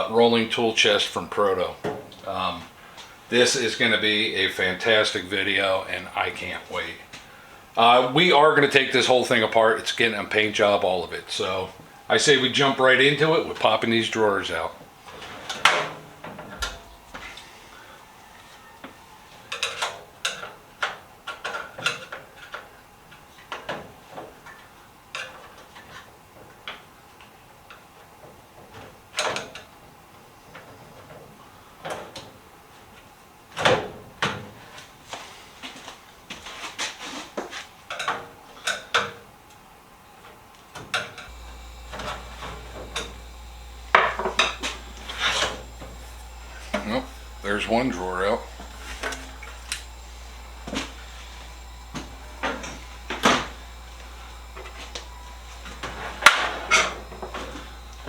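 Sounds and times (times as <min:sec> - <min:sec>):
steady low hum: 0:16.4 - 0:18.2, 0:41.3 - 0:58.0.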